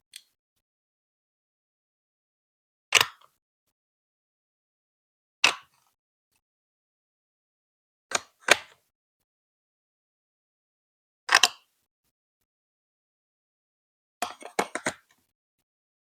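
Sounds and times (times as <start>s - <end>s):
plastic bricks snapping into place: 3.0s - 3.2s, 5.4s - 5.7s, 11.3s - 11.6s.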